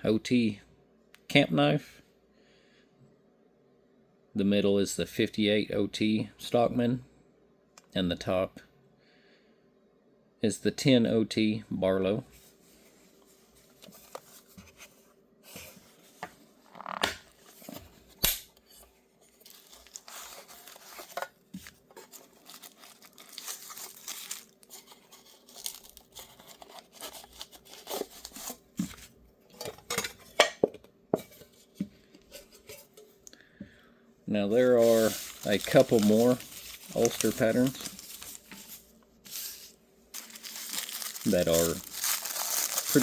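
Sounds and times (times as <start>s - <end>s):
rustling: 18.8s - 29.1s, 34.5s - 43.0s.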